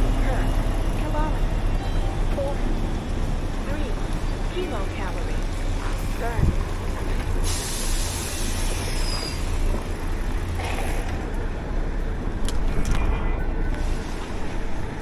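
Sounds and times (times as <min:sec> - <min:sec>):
wind buffeting microphone: 0:02.6 - 0:07.4.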